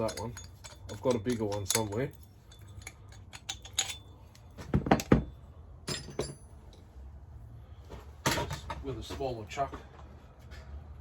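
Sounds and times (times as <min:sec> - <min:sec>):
metal tools clinking and rattling: 0:00.0 - 0:06.8.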